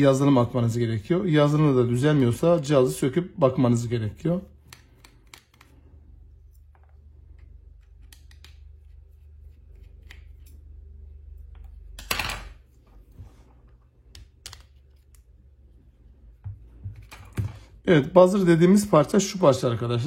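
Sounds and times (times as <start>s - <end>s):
small clicks and taps of phone parts: 4.6s - 5.8s, 6.6s - 8.6s, 14.0s - 15.2s.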